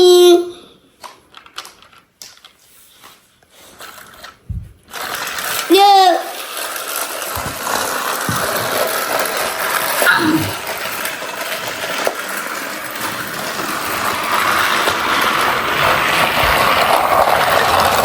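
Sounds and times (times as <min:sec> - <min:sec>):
clicks of toy train: 0:01.0 - 0:02.6, 0:03.8 - 0:18.0
toy train motor whirring: 0:03.4 - 0:18.0.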